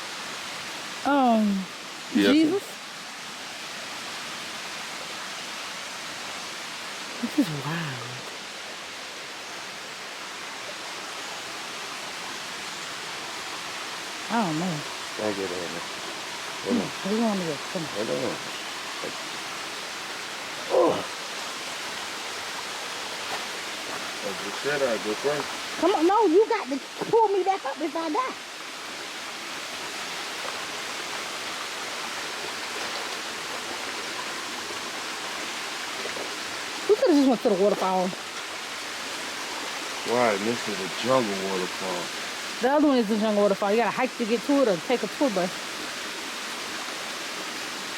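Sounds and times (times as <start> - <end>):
river and waterfall rushing: 0.0 - 47.9.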